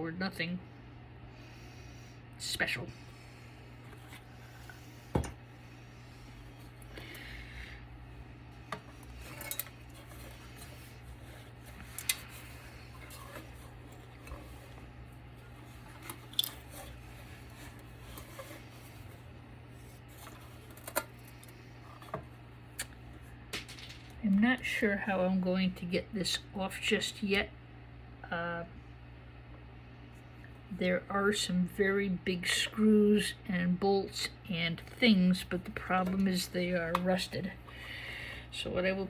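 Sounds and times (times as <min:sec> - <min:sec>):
steady low hum: 0:00.0 - 0:39.0
metal tools clicking and scraping: 0:09.1 - 0:10.7.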